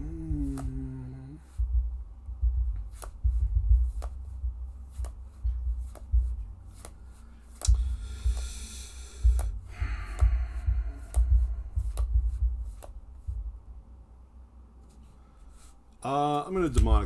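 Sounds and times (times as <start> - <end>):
dull low knocks: 0.0 - 14.1, 16.6 - 17.0
playing cards clicking on table: 2.9 - 3.3, 6.8 - 8.5.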